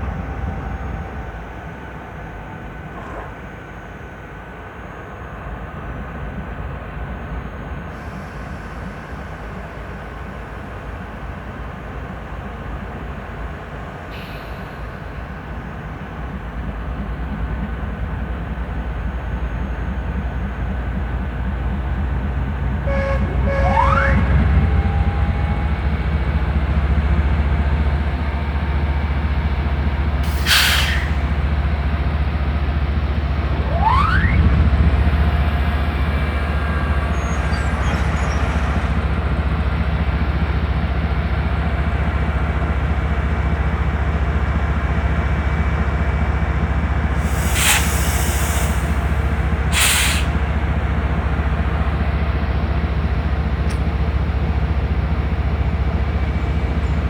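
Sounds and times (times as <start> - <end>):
locomotive engine rumbling: 8.0 - 57.0
rising whine: 32.9 - 39.4
air venting hisses: 47.2 - 49.1.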